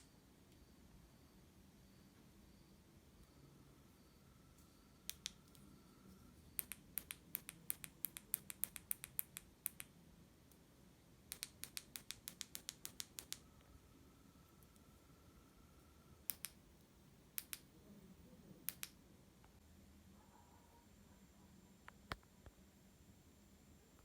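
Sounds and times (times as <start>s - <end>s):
punch needle clicking through fabric: 6.6s - 9.9s, 11.3s - 13.4s.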